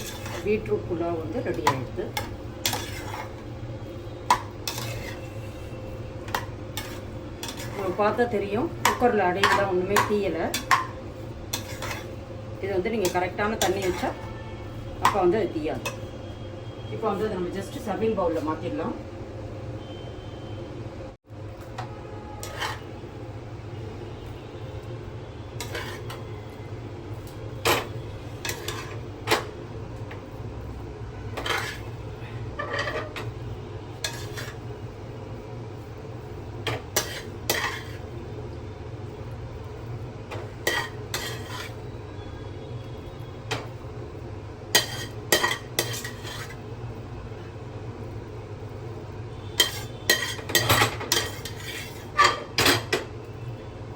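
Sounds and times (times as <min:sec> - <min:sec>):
metal utensil scraping a pot: 0:00.0 - 0:00.6, 0:01.4 - 0:03.5, 0:04.3 - 0:10.9, 0:11.5 - 0:12.2, 0:13.0 - 0:14.3, 0:22.4 - 0:23.0, 0:25.6 - 0:26.3, 0:27.7 - 0:29.0, 0:31.4 - 0:32.0, 0:32.6 - 0:33.3, 0:34.0 - 0:34.6, 0:36.7 - 0:38.1, 0:40.6 - 0:41.8, 0:44.7 - 0:46.6, 0:49.6 - 0:52.8.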